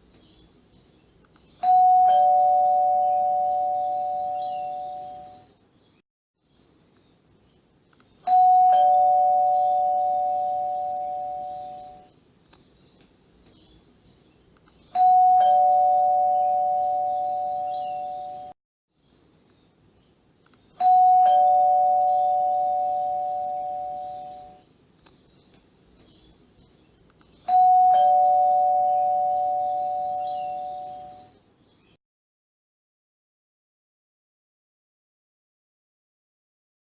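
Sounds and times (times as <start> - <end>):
two-tone doorbell chime: 1.6 - 5.4, 8.3 - 12.1, 15.0 - 18.5, 20.8 - 24.6, 27.5 - 31.3.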